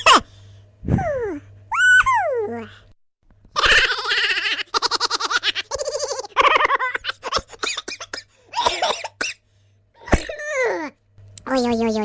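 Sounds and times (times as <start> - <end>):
comic pulsing laughter: 3.5 - 8.1.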